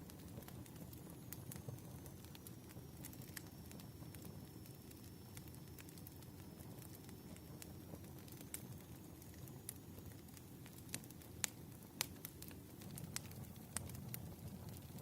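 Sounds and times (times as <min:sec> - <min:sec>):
burning wood rumble: 0:00.0 - 0:15.0
campfire crackling: 0:00.0 - 0:15.0
fire pops and snaps: 0:00.0 - 0:15.0.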